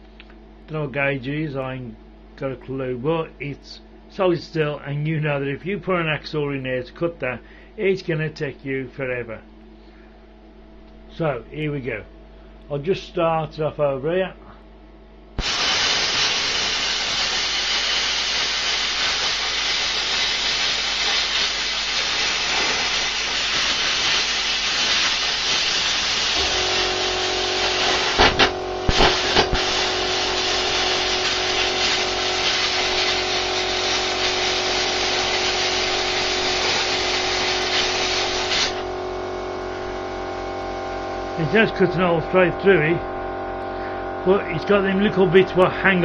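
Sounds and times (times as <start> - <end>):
steady machine hum: 0.0 - 46.0
sharp cracks: 15.4 - 19.4, 27.9 - 29.8
plasma cutter torch hissing: 15.4 - 39.0.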